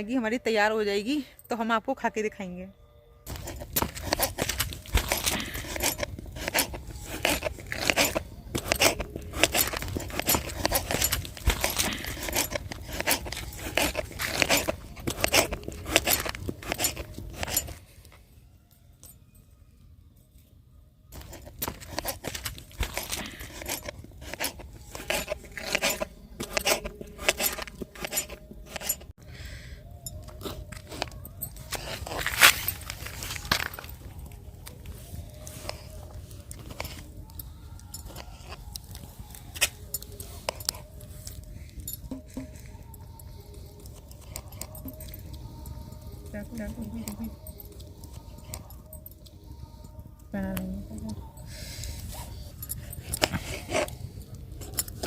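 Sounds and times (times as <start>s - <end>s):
metal utensils clinking on a pot: 3.3s - 17.8s, 21.2s - 29.1s
crunching: 3.3s - 18.2s, 21.1s - 29.2s, 29.9s - 50.3s.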